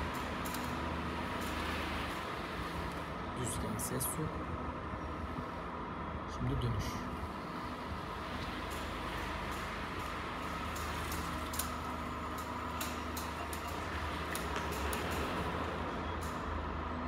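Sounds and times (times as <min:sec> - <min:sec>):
car clicking while turning: 0:08.3 - 0:16.4.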